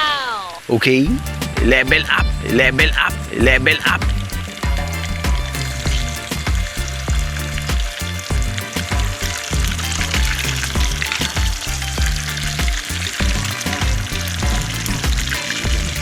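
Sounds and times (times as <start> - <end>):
background music with bass beat: 1.1 - 16.0
fish sizzling in hot oil: 3.8 - 16.0.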